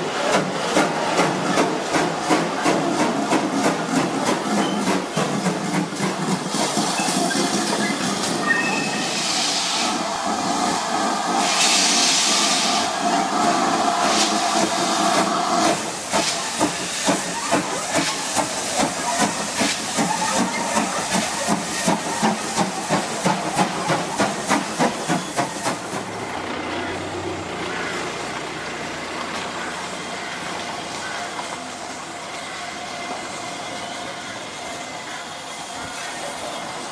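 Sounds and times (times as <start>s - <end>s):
steam locomotive hissing: 0.0s - 36.9s
steam release bursts: 0.4s - 26.6s.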